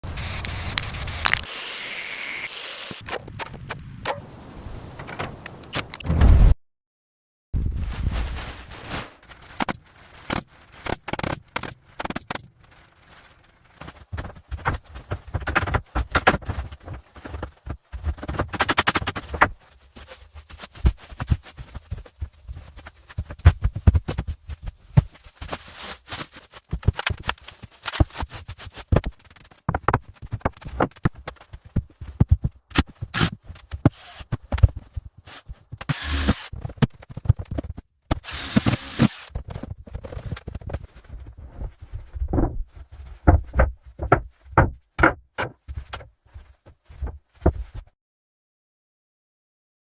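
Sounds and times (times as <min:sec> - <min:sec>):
objects clicking and knocking: 0:00.3 - 0:01.5
rustling: 0:11.7 - 0:35.8, 0:36.4 - 0:44.8, 0:45.6 - 0:47.9.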